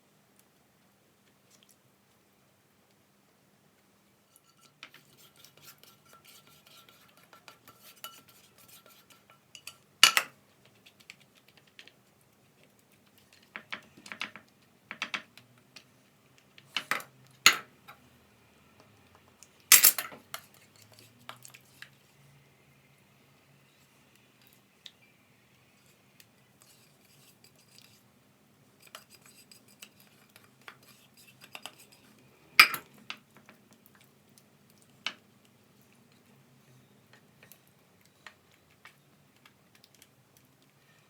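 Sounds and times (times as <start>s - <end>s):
metal utensils clinking on dishes: 4.4s - 10.4s, 19.7s - 21.4s, 32.6s - 32.9s.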